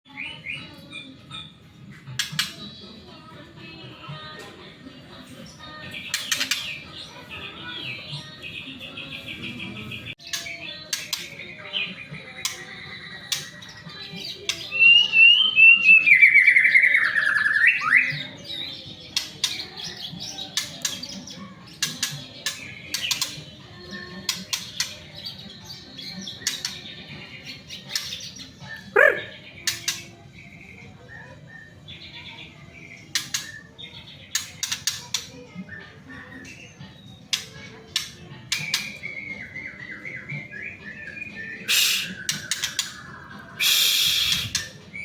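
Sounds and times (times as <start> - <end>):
bird warbling song: 5.2 - 45.0
short bird calls: 28.9 - 29.4, 41.7 - 42.3, 43.6 - 44.6.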